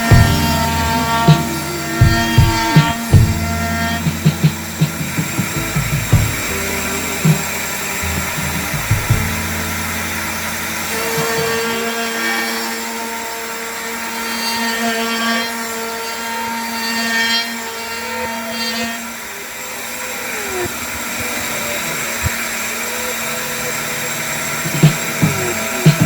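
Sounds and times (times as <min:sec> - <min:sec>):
power tool motor humming: 0:00.0 - 0:26.0
low knocks: 0:00.1 - 0:11.5.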